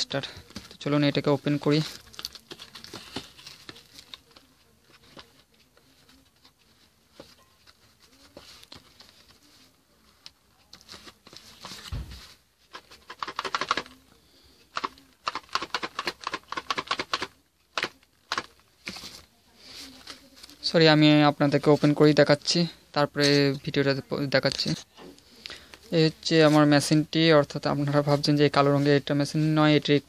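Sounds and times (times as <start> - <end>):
packaging rustling and crinkling: 1.5 - 6.6.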